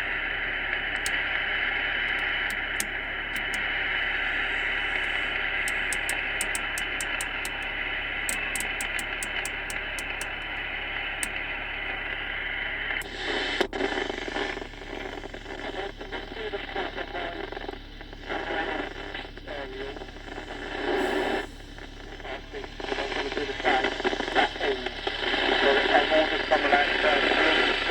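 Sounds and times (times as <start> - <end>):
faint regular ticking: 0.0 - 13.9
weak radio station fragments: 0.0 - 21.0, 22.0 - 27.9
radio static hiss: 0.0 - 27.9.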